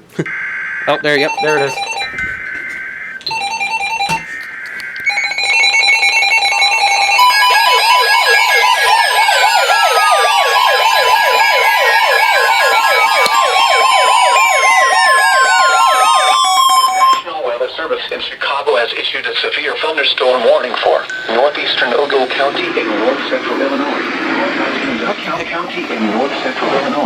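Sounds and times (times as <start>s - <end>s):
steady alert tones: 0.2s - 17.3s
warbling siren-like alarm: 0.2s - 17.6s, 20.1s - 27.0s.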